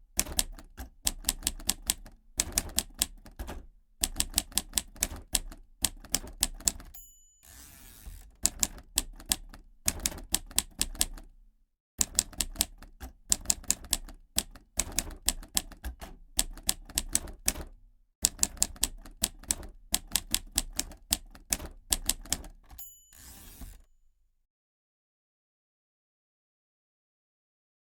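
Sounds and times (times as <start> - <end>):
typewriter keys clicking: 0.1 - 11.3, 12.0 - 23.8
typewriter carriage scraping back: 6.0 - 8.9, 21.6 - 23.9
typewriter margin bell ding: 6.7 - 8.2, 22.7 - 23.9.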